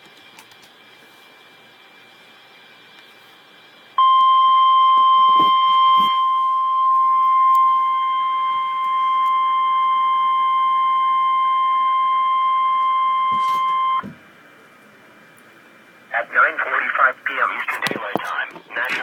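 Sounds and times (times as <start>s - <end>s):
steady high-pitched alarm tone: 4.0s - 14.1s.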